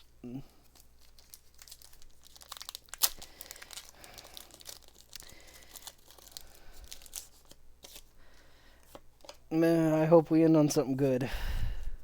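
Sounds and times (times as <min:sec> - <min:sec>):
foil wrapper tearing and crinkling: 0:00.6 - 0:08.1.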